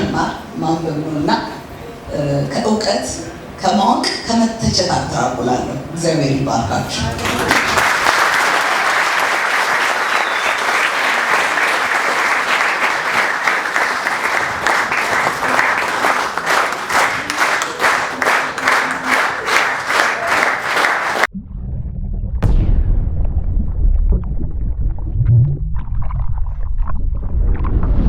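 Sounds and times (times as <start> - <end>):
audience applauding: 7.0 - 21.3
rhythmic unison clapping: 7.1 - 21.3
low rumble: 21.3 - 28.0.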